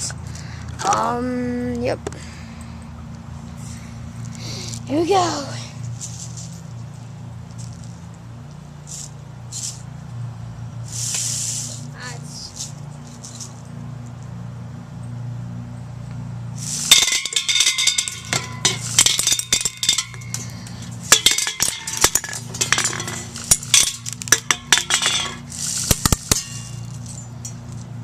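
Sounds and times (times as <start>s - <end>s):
pellets rattling and clinking: 16.6s - 27.9s.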